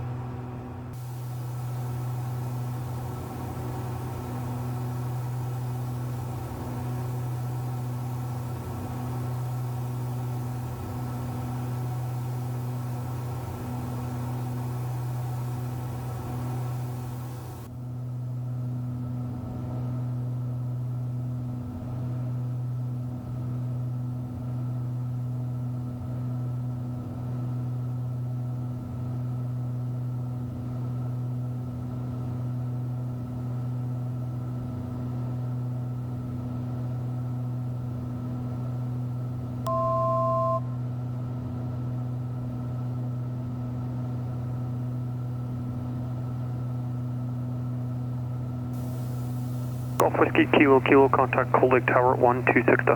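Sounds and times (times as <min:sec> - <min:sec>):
airplane cabin engine drone: 0:00.0 - 0:17.7, 0:48.8 - 0:52.9
two-tone electronic beep: 0:39.7 - 0:40.7.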